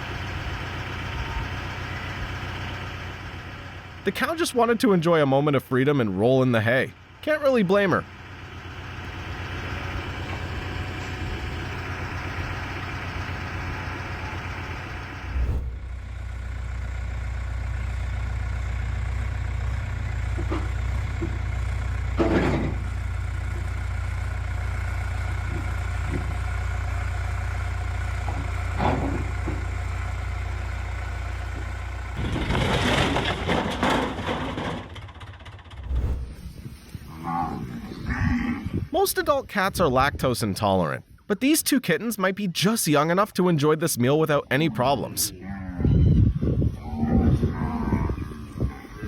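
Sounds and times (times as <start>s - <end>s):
engine humming: 0.0s - 38.1s.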